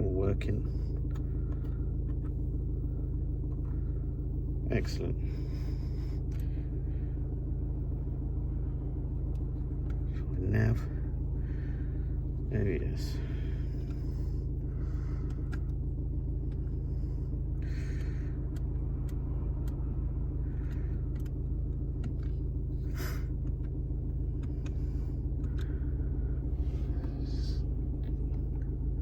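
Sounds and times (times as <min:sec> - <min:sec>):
car engine idling: 0:00.0 - 0:29.0
light clicks: 0:20.6 - 0:22.4.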